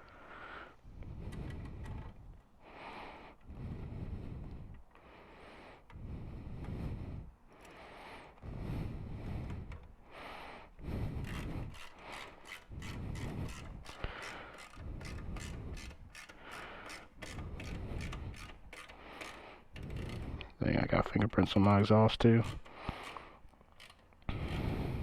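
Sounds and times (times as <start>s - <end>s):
tools rubbing and scraping: 10.9s - 25.0s
quick ratchet clicks: 11.2s - 20.4s, 21.4s - 24.6s.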